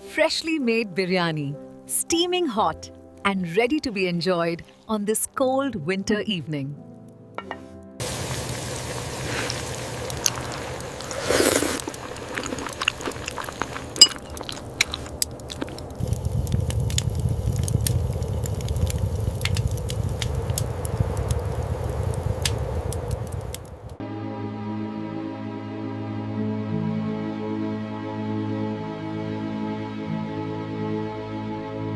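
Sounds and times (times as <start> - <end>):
person chewing: 9.4 - 16.1
low steady rumble: 12.0 - 24.0.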